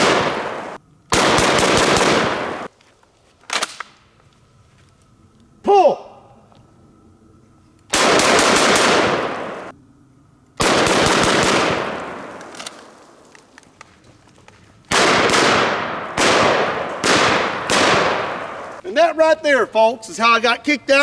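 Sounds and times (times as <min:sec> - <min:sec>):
shotgun shots echoing: 0:00.0 - 0:02.7, 0:07.9 - 0:09.7, 0:10.6 - 0:13.0, 0:14.9 - 0:18.8.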